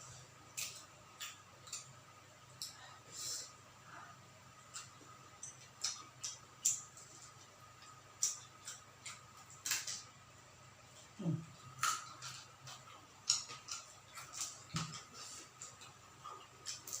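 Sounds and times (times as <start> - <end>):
crunchy chewing: 10.9 - 17.0.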